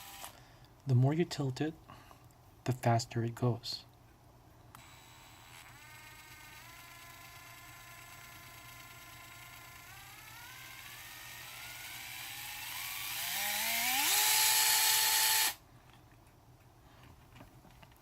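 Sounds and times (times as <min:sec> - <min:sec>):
cordless screwdriver motor whining: 0:00.0 - 0:00.4, 0:04.7 - 0:15.6.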